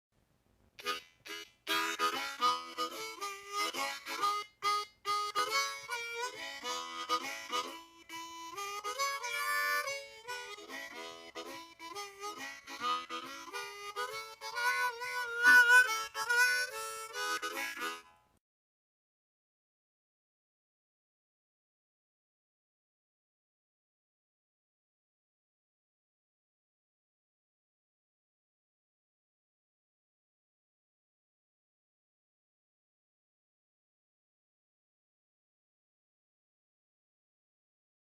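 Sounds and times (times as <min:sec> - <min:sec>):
harmonica tune: 0:00.8 - 0:18.4.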